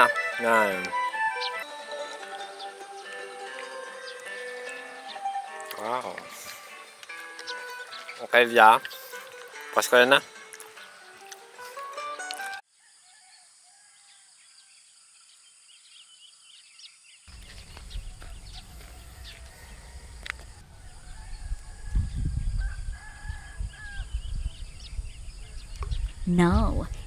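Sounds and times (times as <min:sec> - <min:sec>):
small birds chirping: 0:00.0 - 0:12.6, 0:14.4 - 0:27.0
wind buffeting microphone: 0:17.3 - 0:27.0
rooster crowing: 0:17.7 - 0:24.6.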